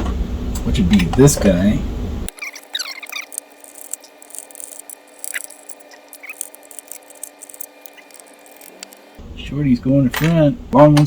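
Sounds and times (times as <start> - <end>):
brief squeak: 2.3 - 3.4
screwdriver clicking on screws: 2.3 - 9.2.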